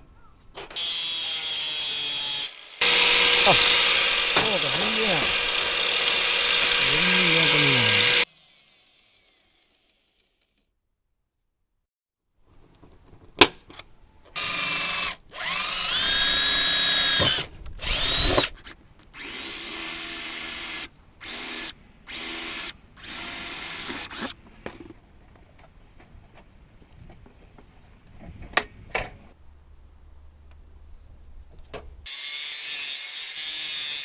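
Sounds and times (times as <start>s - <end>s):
electric drill whining: 0.8s - 8.3s, 14.9s - 29.3s
sharp clicks: 18.4s - 24.9s.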